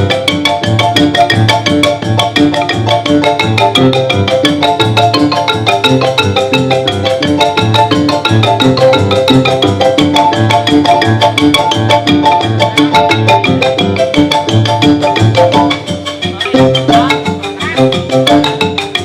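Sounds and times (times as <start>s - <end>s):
fast xylophone notes: 0.0s - 19.0s.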